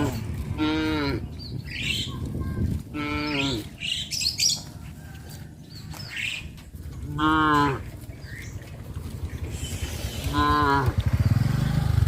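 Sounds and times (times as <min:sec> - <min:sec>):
cows mooing: 0:00.0 - 0:01.4, 0:02.9 - 0:03.8, 0:06.9 - 0:08.2, 0:09.1 - 0:12.0
birds chirping: 0:00.0 - 0:12.0.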